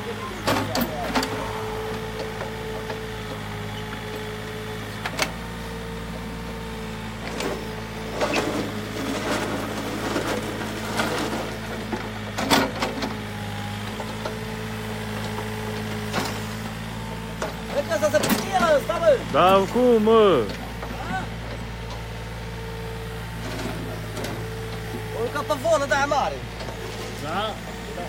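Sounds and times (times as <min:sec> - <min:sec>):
diesel engine running: 0:00.0 - 0:28.0.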